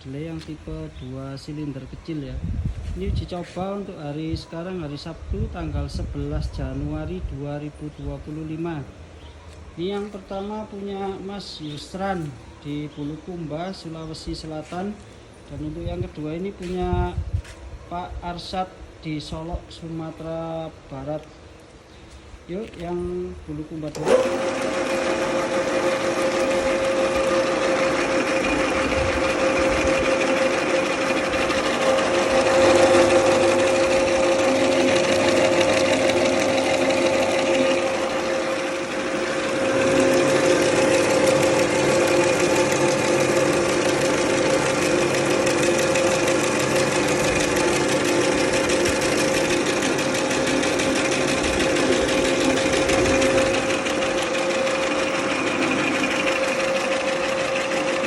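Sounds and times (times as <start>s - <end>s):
mill machine humming and whining: 23.9s - 58.0s.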